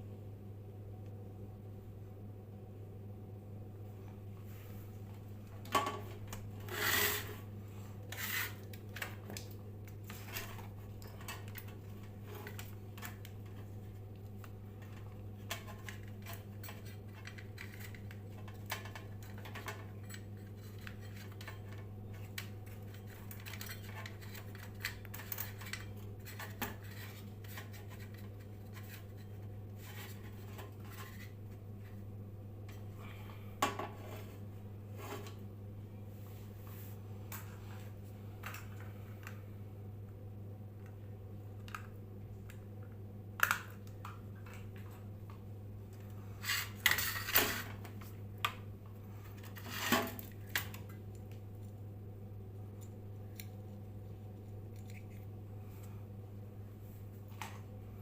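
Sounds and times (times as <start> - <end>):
low electrical hum: 0.0 - 58.0.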